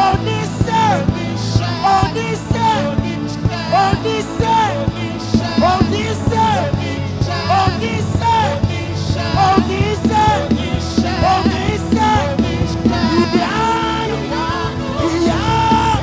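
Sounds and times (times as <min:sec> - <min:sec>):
band playing gospel music: 0:00.0 - 0:16.0
bass: 0:00.0 - 0:16.0
person singing: 0:00.0 - 0:16.0
steady drum beat: 0:03.4 - 0:16.0.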